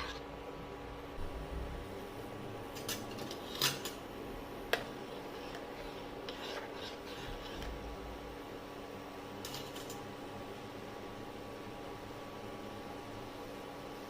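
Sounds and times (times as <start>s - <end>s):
kitchen utensil scrapes: 0.0s - 0.3s, 5.0s - 7.8s
steady hum: 0.0s - 14.0s.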